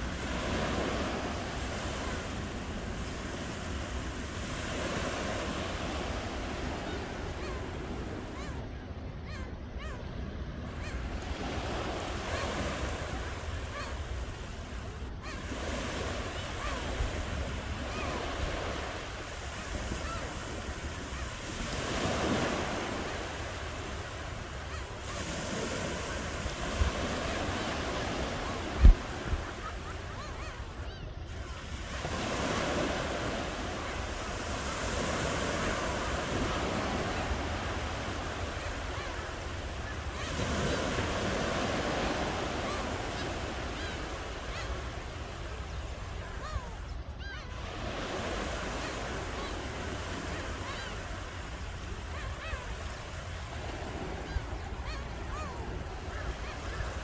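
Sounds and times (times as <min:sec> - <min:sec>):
ocean waves washing ashore: 0:00.0 - 0:57.0
wind rumbling on microphone: 0:28.3 - 0:29.6.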